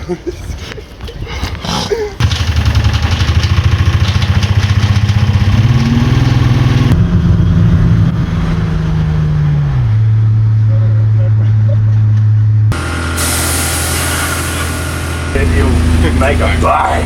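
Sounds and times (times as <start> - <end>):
car engine idling: 2.2 - 10.8, 12.7 - 17.0.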